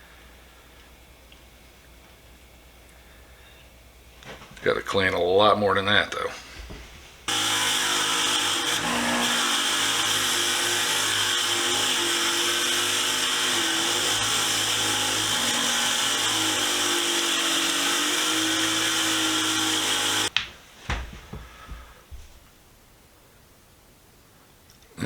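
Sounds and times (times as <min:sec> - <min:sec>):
wire wheel scrubbing rust: 0:07.3 - 0:20.3.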